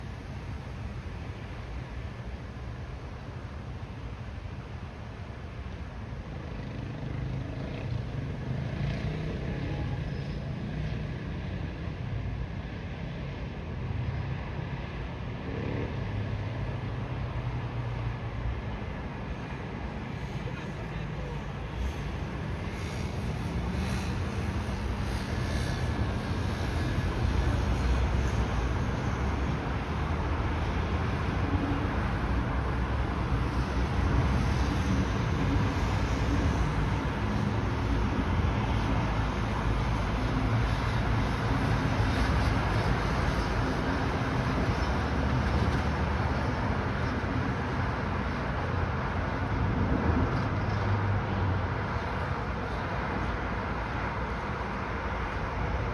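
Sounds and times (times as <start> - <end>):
jet engines droning: 18.1 - 55.9.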